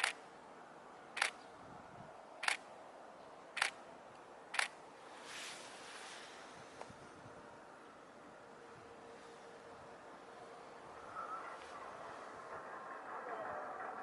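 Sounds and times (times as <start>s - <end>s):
camera shutter clicking: 0.0s - 0.2s, 1.2s - 1.4s, 2.4s - 2.7s, 3.6s - 3.8s, 4.5s - 4.8s
soft rush of noise: 0.0s - 14.0s.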